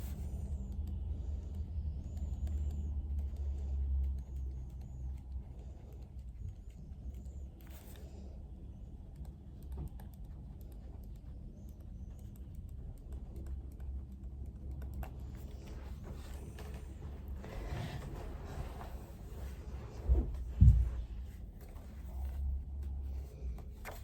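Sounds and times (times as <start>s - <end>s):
keyboard typing clicks: 9.0s - 15.6s.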